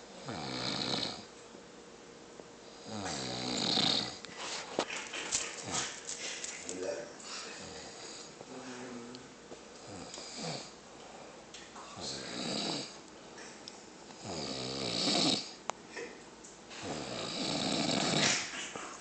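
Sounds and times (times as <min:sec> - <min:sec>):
bear snoring: 0:00.0 - 0:01.3, 0:02.7 - 0:04.3, 0:09.8 - 0:10.8, 0:12.0 - 0:13.0, 0:14.2 - 0:15.6, 0:16.7 - 0:18.5.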